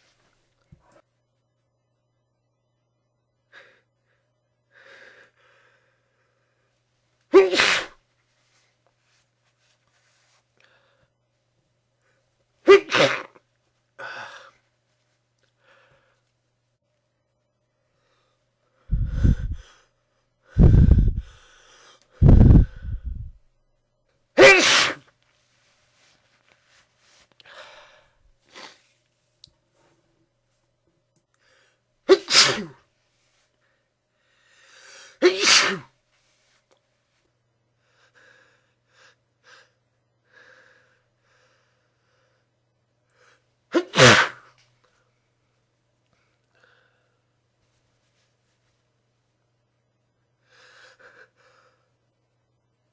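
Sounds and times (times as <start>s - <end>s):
person sneezing: 7.3s - 8.0s, 12.6s - 13.4s, 24.4s - 25.1s, 32.1s - 32.9s, 35.1s - 35.9s, 43.7s - 44.6s
faint breaths and inhales: 17.8s - 23.4s.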